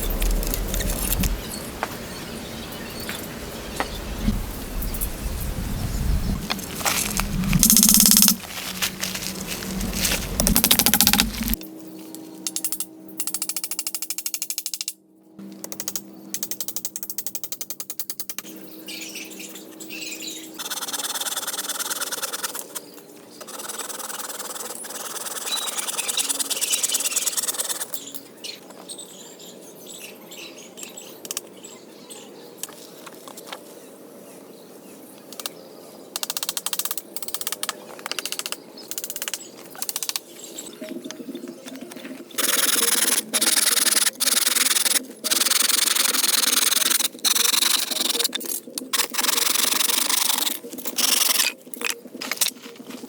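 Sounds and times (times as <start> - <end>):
hand tool rasping wood: 6.4 - 11.6.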